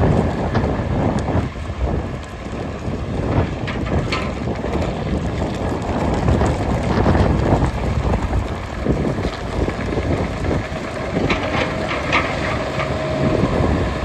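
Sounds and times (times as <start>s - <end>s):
excavator engine rumbling: 0.0s - 14.0s.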